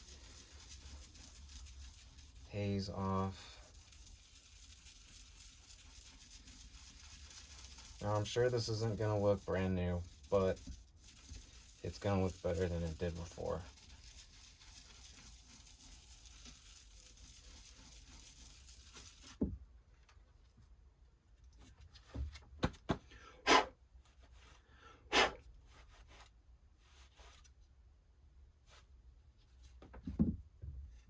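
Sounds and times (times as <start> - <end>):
sandpaper scrubbing plastic: 0.0 - 19.4.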